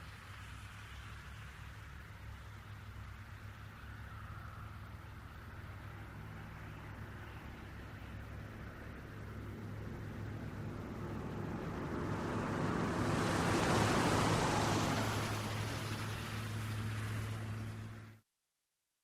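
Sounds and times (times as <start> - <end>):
tyres hissing on wet asphalt: 12.7 - 18.1.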